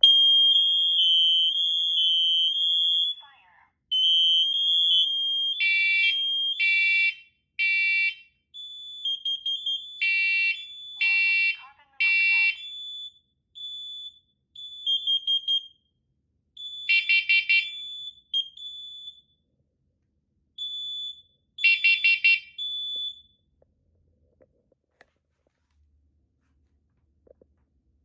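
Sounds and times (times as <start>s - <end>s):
carbon monoxide alarm beeps: 0.0s - 15.9s, 16.6s - 19.4s, 20.6s - 23.4s
longer high beeps: 3.9s - 15.7s, 20.6s - 23.2s.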